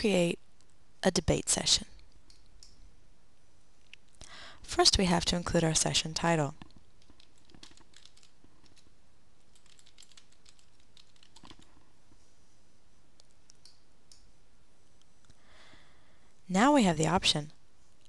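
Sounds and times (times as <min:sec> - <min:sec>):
faint typing on keyboard: 0:01.9 - 0:02.8, 0:06.5 - 0:12.2, 0:13.2 - 0:15.4.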